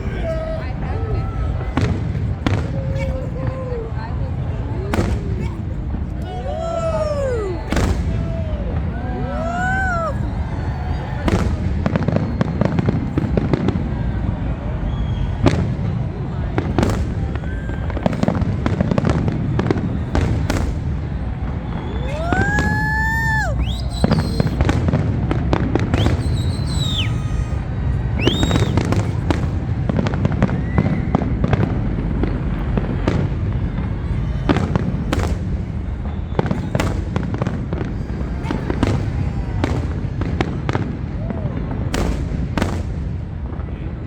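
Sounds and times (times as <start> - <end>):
fireworks booming and crackling: 0.0 - 44.0
firework whistles: 6.6 - 8.9, 9.5 - 29.5, 30.2 - 31.7, 33.1 - 41.0.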